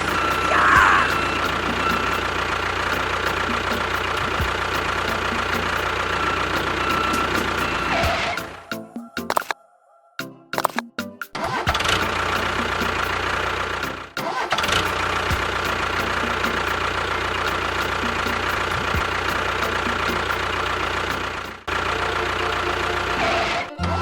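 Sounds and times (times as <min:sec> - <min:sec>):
motor humming and whining: 0:00.0 - 0:08.4.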